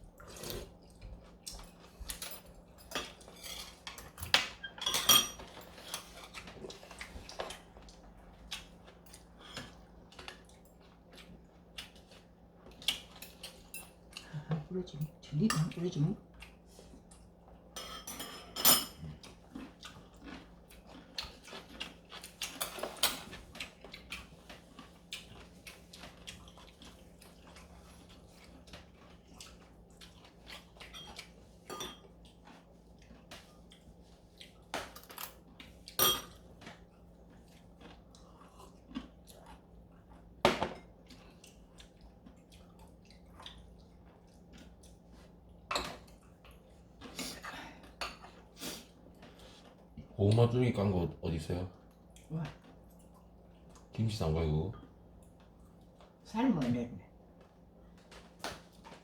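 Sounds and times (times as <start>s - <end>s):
soft chewing: 0.0s - 4.6s, 5.4s - 17.8s, 18.9s - 50.9s, 51.5s - 59.0s
utensils clinking against bowls: 1.5s - 6.4s, 17.8s - 19.1s, 30.8s - 32.1s, 36.0s - 36.4s.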